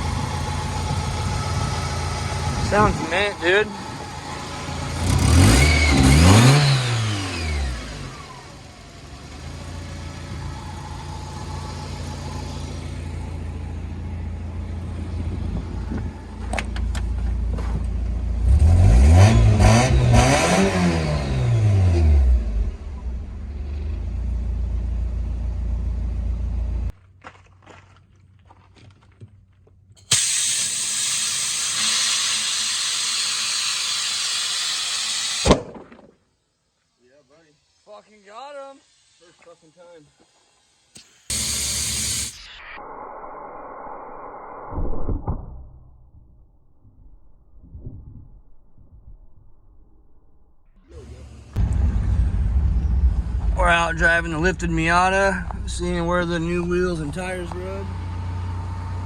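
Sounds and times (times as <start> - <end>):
car engine idling and revving: 0.0 - 27.0, 50.9 - 59.0
steady hiss: 36.5 - 42.4.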